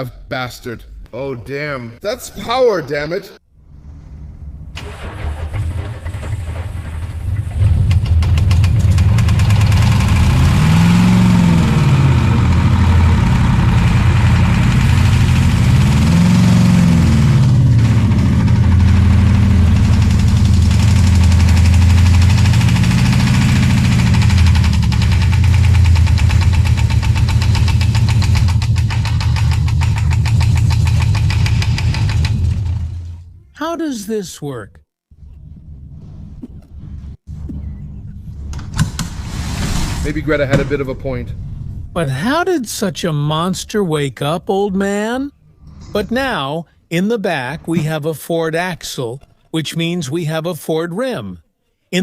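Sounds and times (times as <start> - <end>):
diesel engine clattering: 3.6 - 33.4.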